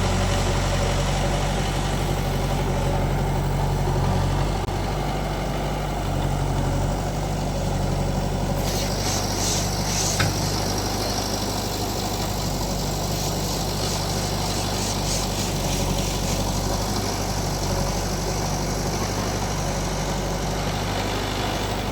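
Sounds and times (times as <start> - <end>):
diesel machinery engine running: 0.0 - 21.9
high rushing hiss: 8.5 - 19.9.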